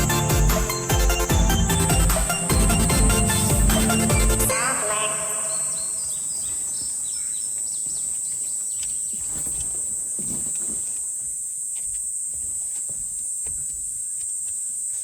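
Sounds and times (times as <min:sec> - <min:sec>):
bird chirps: 0:00.0 - 0:09.6.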